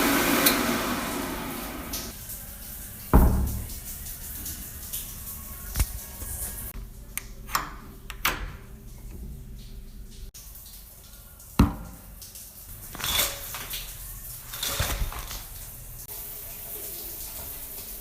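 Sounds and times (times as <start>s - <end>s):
sharp knocks and clunks: 11.6s - 12.0s.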